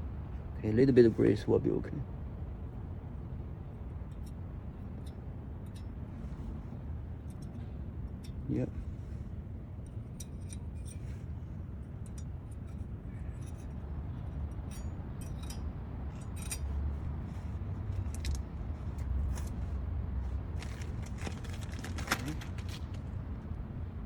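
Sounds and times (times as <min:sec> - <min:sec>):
low steady rumble: 0:00.0 - 0:24.0.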